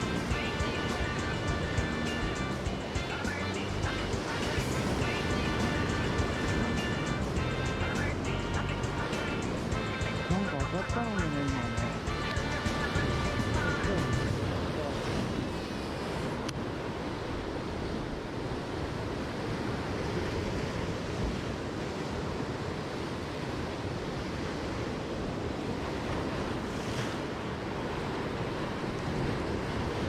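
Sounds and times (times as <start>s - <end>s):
surf washing against rocks: 0.0s - 30.0s.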